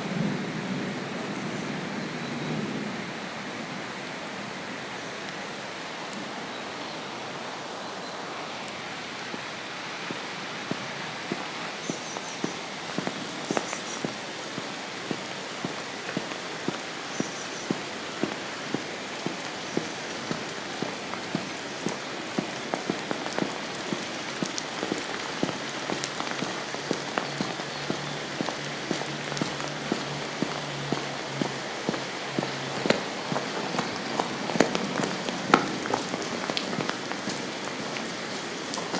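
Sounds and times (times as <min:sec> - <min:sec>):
steady rain: 0:00.0 - 0:38.9
raindrops tapping on hard surface: 0:09.3 - 0:38.9.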